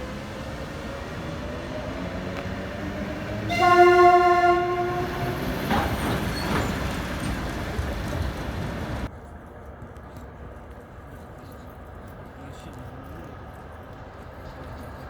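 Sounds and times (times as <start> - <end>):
train rumble and wheel clatter: 0.0 - 15.0
train horn: 2.7 - 9.1.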